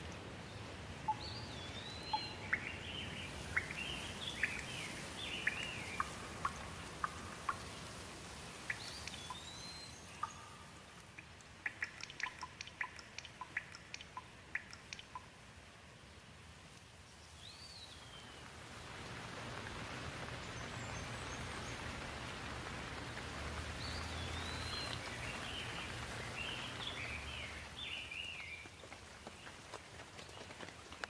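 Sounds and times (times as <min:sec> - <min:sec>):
rain falling: 0:00.0 - 0:31.0
bird chirping: 0:00.4 - 0:07.8, 0:08.6 - 0:15.3, 0:23.7 - 0:28.9.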